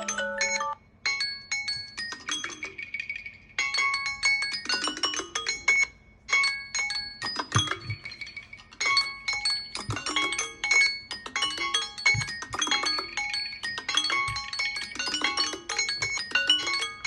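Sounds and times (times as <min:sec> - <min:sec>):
electronic ringtone melody: 0:00.0 - 0:00.8, 0:06.5 - 0:17.0.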